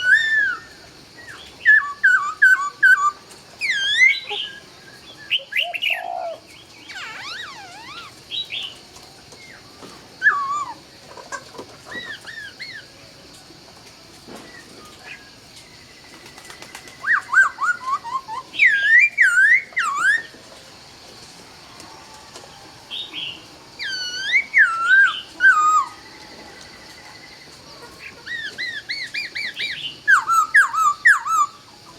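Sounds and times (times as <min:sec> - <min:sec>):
bird singing whistled phrases: 0:00.0 - 0:08.8, 0:10.2 - 0:10.8, 0:17.0 - 0:20.3, 0:22.9 - 0:26.0, 0:28.3 - 0:31.6.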